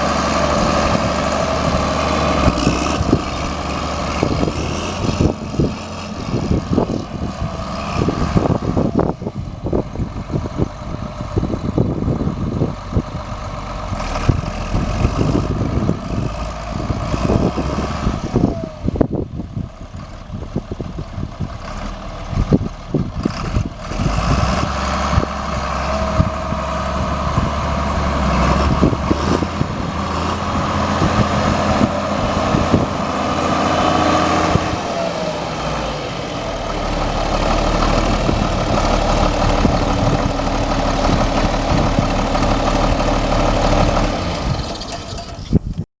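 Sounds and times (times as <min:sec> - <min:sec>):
tractor diesel engine running: 0:00.0 - 0:45.9.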